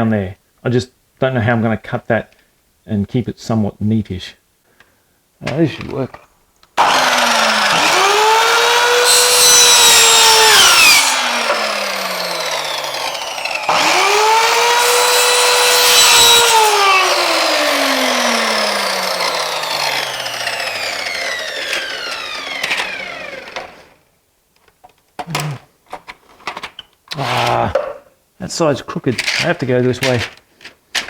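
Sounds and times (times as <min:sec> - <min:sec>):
power cutting tool whining: 0:06.8 - 0:24.0.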